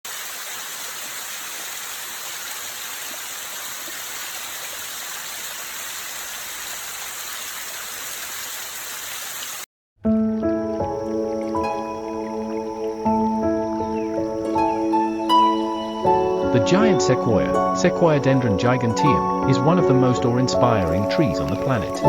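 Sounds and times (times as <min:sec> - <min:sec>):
rushing water: 0:00.0 - 0:09.7, 0:10.7 - 0:13.4, 0:14.4 - 0:22.0
soft music with sustained tones: 0:10.1 - 0:22.0.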